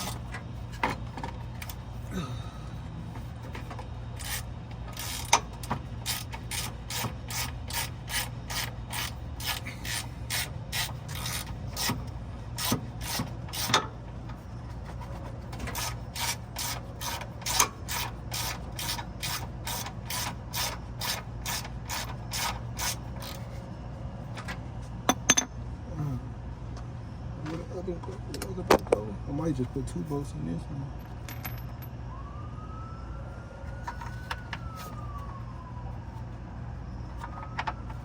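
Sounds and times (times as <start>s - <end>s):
ratchet wrench clicking: 4.2s - 13.9s, 15.8s - 23.4s.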